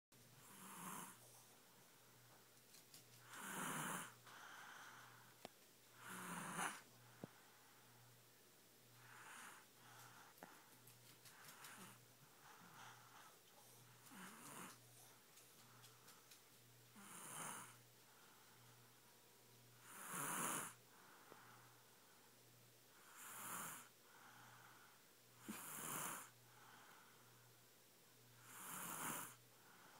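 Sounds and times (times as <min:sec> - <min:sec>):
baby snoring: 0:00.4 - 0:01.2, 0:03.2 - 0:04.2, 0:06.0 - 0:06.8, 0:09.0 - 0:09.7, 0:14.0 - 0:14.8, 0:17.0 - 0:17.8, 0:19.8 - 0:20.8, 0:23.0 - 0:23.9, 0:25.4 - 0:26.3, 0:28.4 - 0:29.4
soft breath: 0:03.3 - 0:08.3, 0:08.9 - 0:16.2, 0:20.8 - 0:22.4, 0:23.8 - 0:27.6, 0:29.3 - 0:29.9
faint clicks: 0:10.0 - 0:12.0, 0:14.0 - 0:16.7.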